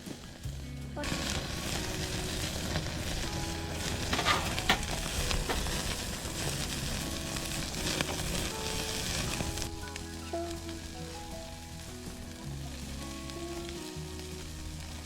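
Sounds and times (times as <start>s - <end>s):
food sizzling in a pan: 1.0s - 15.0s
sharp pops from pan: 4.0s - 5.9s.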